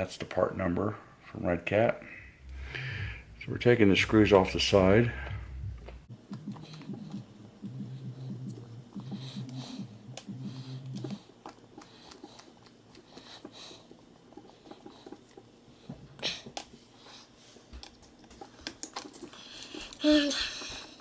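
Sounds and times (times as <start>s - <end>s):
low hum: 2.0s - 16.7s
hex driver clicks and taps: 6.3s - 11.2s.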